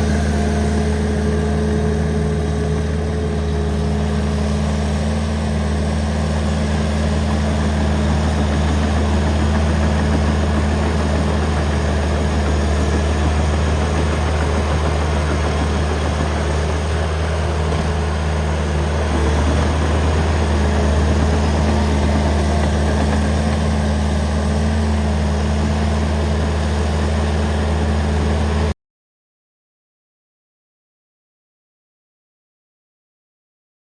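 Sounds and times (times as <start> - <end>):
engine idling: 0.0 - 28.7.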